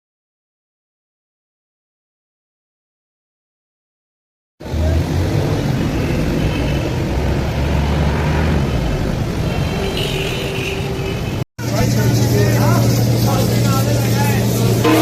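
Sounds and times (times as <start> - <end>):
traffic engines rumbling: 4.6 - 15.0.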